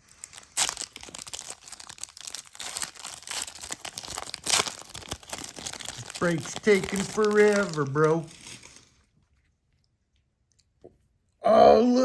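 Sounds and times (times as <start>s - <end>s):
cards and wrapper rustling: 0.0s - 9.4s.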